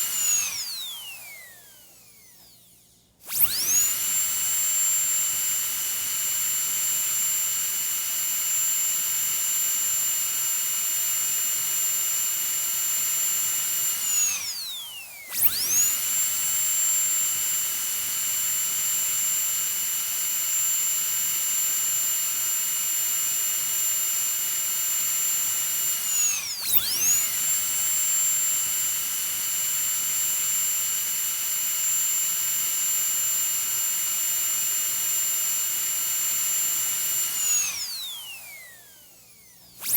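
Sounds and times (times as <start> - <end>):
dental drill whining: 0.0 - 2.7, 3.3 - 39.9.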